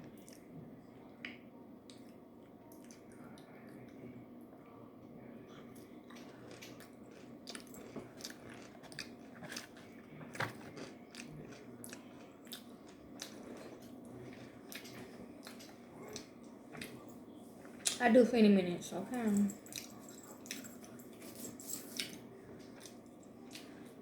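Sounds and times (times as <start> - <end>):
person chewing crunchy food: 5.6 - 18.0, 21.9 - 24.0.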